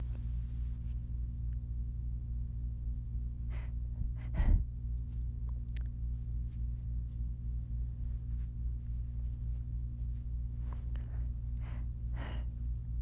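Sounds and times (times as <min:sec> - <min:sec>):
steady low hum: 0:00.0 - 0:13.0
person breathing: 0:03.4 - 0:04.7, 0:10.6 - 0:12.8.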